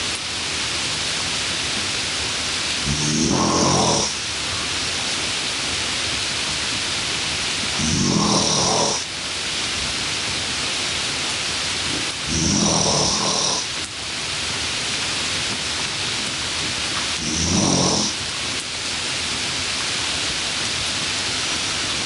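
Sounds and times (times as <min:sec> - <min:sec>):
loud steady hiss: 0:00.0 - 0:22.0
person snoring: 0:02.8 - 0:04.2, 0:07.8 - 0:09.1, 0:12.2 - 0:13.7, 0:17.2 - 0:18.2.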